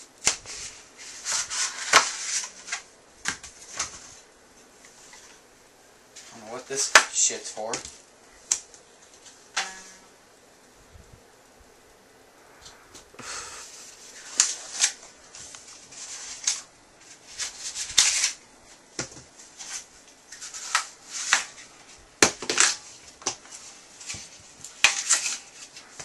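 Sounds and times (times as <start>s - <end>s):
packaging rustling and crinkling: 13.7s - 26.0s.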